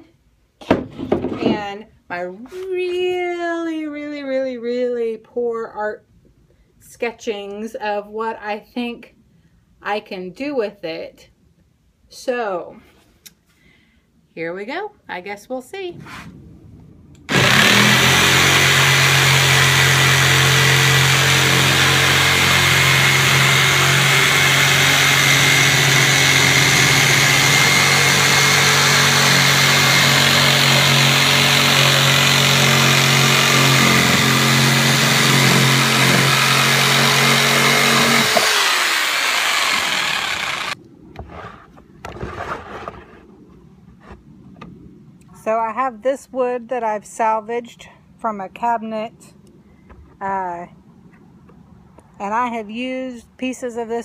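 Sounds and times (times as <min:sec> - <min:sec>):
power tool motor humming: 0:17.3 - 0:40.8.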